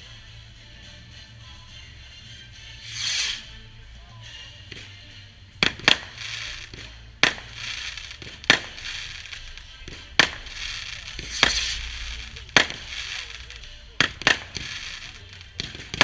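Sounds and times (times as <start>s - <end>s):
crackling hiss of fireworks: 0.0s - 16.0s
fireworks bangs: 2.8s - 3.6s, 5.6s - 16.0s.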